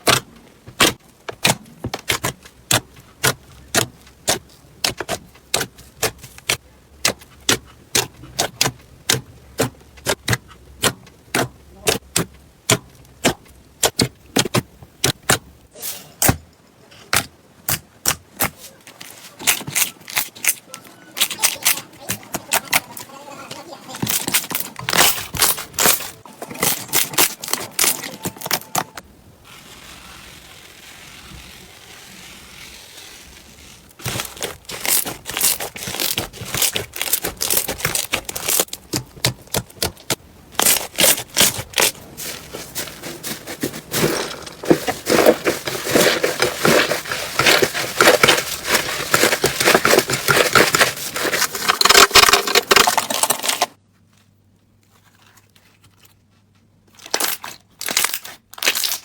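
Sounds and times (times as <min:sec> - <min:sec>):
slime crackling and popping: 0:24.0 - 0:42.0, 0:57.0 - 0:59.0.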